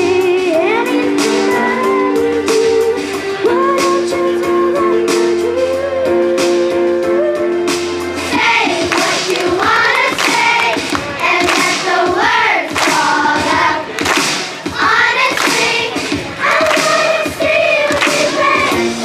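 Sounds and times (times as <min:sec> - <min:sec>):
children singing in chorus: 0:08.3 - 0:14.0, 0:14.7 - 0:19.0.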